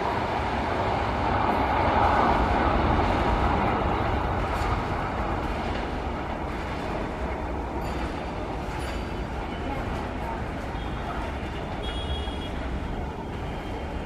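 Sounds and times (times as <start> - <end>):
train wheels rumbling on rails: 0.0 - 14.0.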